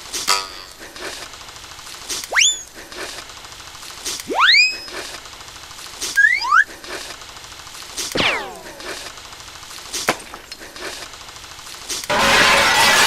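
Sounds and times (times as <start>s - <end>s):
sharp cracks: 0.1s - 13.0s
falling whistle glide: 2.3s - 2.7s, 4.3s - 5.0s, 6.2s - 6.7s
rising whistle glides: 2.3s - 2.7s, 4.3s - 4.9s, 6.2s - 6.7s
glass shattering: 12.1s - 13.0s.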